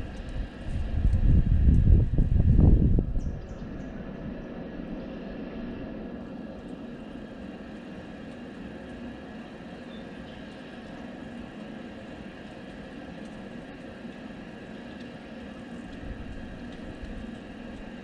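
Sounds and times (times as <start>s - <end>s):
steady rain falling: 0.0s - 1.8s, 6.1s - 18.0s
low rumble: 0.0s - 4.6s
faint high chirp: 9.8s - 10.3s.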